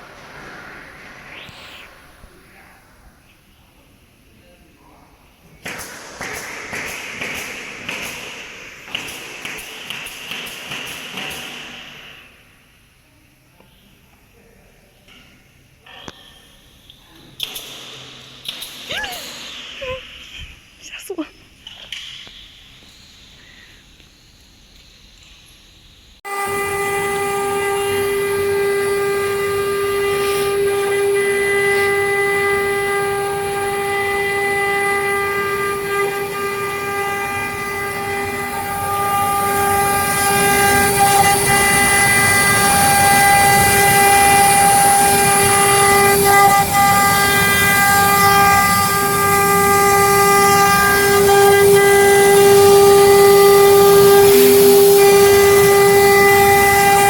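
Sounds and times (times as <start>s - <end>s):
high hiss: 0.0s - 5.0s
router spindle whining: 26.3s - 57.0s.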